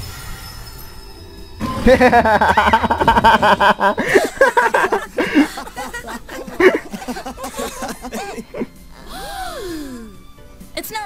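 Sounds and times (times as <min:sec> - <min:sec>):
people laughing: 0:01.8 - 0:09.4
voices exclaiming: 0:03.8 - 0:09.2.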